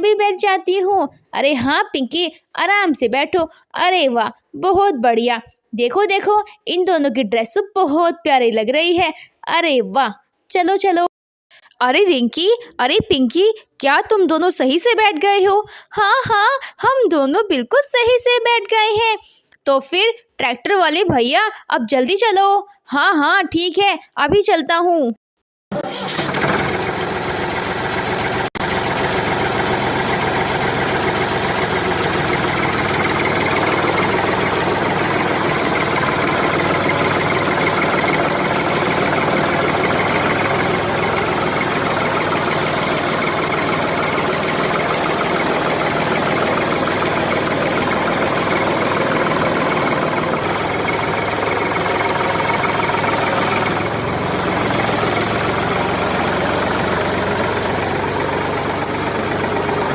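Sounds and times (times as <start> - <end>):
tractor engine chugging: 25.7 - 59.9.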